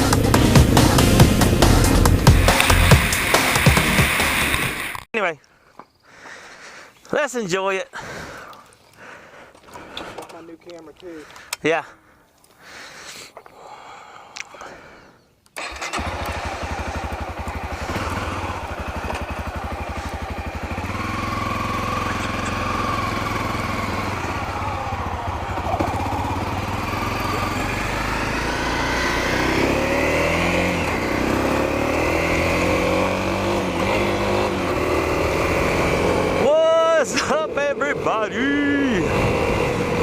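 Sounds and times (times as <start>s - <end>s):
motorcycle engine starting and idling: 0.0s - 5.0s, 15.6s - 36.6s
second engine revving: 15.6s - 36.5s, 38.8s - 40.0s.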